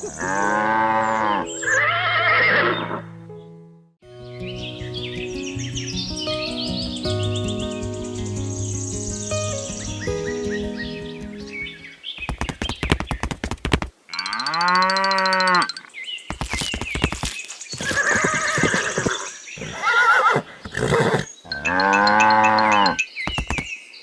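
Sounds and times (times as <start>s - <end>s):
cow mooing: 0.1s - 3.0s
horse whinny: 0.2s - 3.0s.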